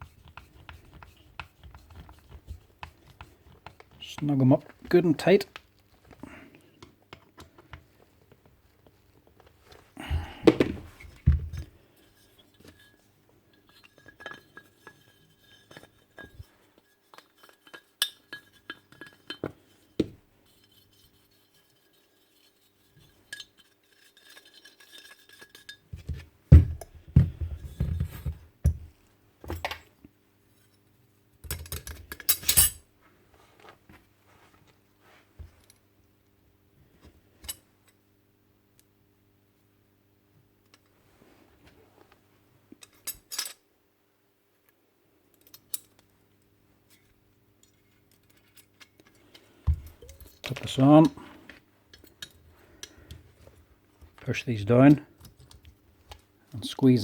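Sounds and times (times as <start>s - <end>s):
metal parts and tools clattering: 31.4s - 32.8s, 42.8s - 43.6s.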